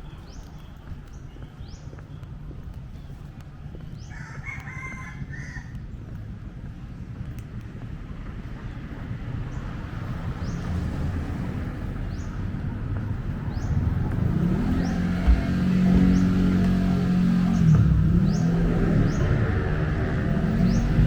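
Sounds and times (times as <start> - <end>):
vehicle engine drone: 10.1 - 21.0
brief thump: 15.2 - 16.4.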